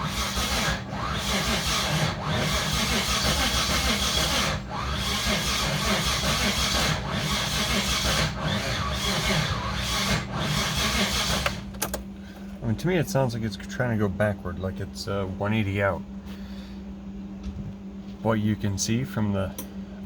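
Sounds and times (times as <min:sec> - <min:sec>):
starter cranking engine: 0:00.0 - 0:12.0.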